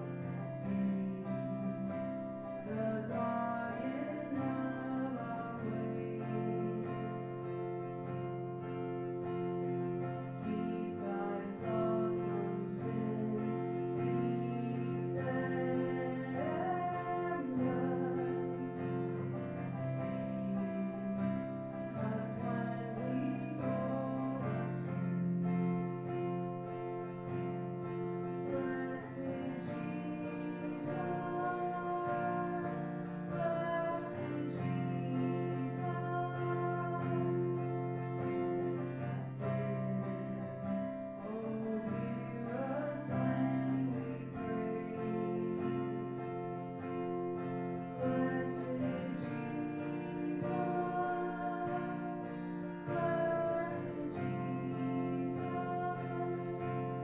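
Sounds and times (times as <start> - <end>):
guitar: 0.0 - 57.0
person singing worship music: 0.0 - 57.0.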